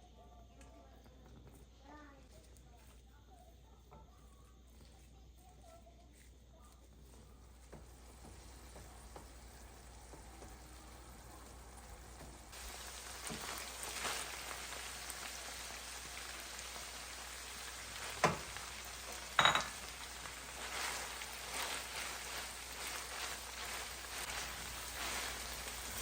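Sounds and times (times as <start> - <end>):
food sizzling in a frying pan: 6.9 - 26.0
utensil clinking on pan: 19.4 - 20.0.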